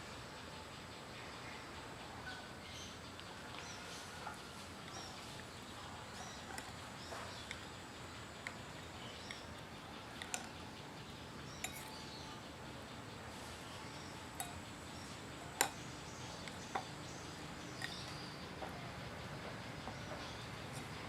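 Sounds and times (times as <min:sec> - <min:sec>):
light clicks and clinks: 0:08.4 - 0:12.8, 0:13.6 - 0:18.8.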